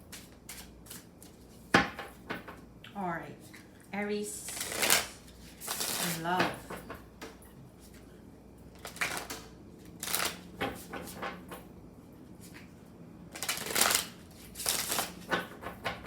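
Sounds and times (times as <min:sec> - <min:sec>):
cards being shuffled: 0:00.1 - 0:01.6, 0:04.5 - 0:06.7, 0:08.8 - 0:11.3, 0:13.3 - 0:15.4.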